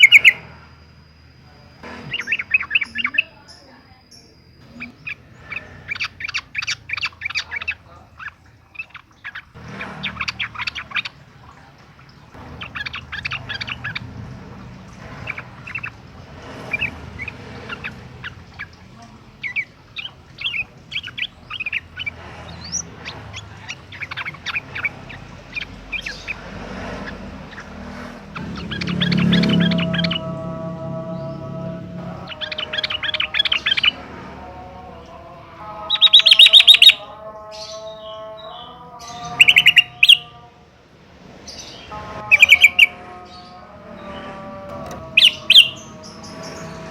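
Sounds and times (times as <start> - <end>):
bulbul bubbly chirping song: 0.0 - 0.5, 2.1 - 14.1, 27.5 - 30.3, 32.2 - 34.0, 35.8 - 37.0, 39.3 - 40.2, 42.3 - 42.9, 45.2 - 45.9.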